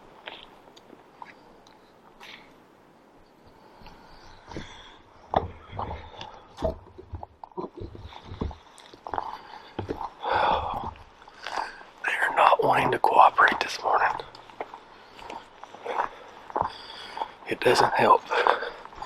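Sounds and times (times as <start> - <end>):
footsteps on forest floor: 4.4 - 19.0.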